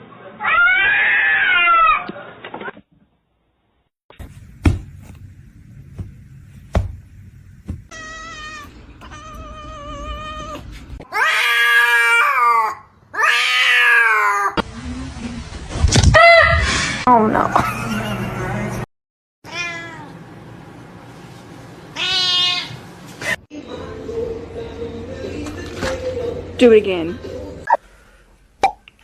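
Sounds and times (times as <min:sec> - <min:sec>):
cat meowing and yowling: 0:00.4 - 0:02.1, 0:07.9 - 0:14.6, 0:19.5 - 0:20.1.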